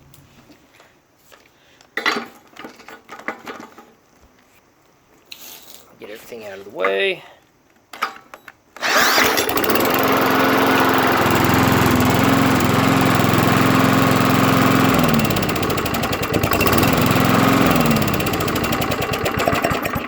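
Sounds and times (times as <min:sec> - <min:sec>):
lawn mower engine running: 0:08.8 - 0:20.0.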